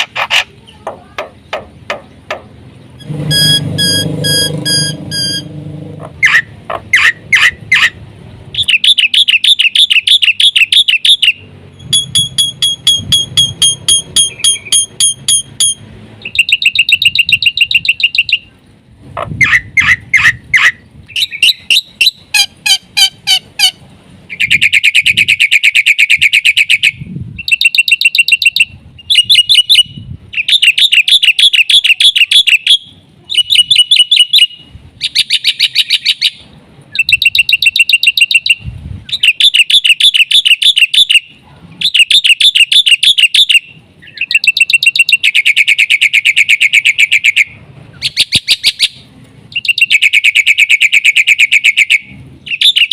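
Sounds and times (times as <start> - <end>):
myna singing trills and whistles: 24.3 - 36.4, 37.0 - 52.9.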